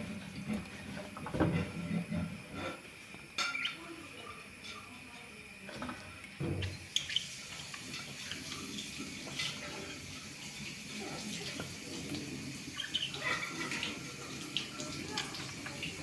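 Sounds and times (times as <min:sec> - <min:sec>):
tap water running into sink: 0:06.4 - 0:16.0.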